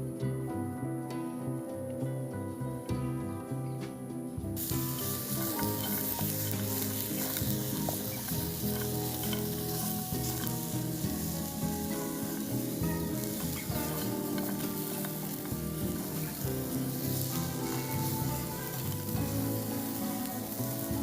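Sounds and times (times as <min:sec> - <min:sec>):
background music: 0:00.0 - 0:21.0
food sizzling in a pan: 0:04.6 - 0:21.0.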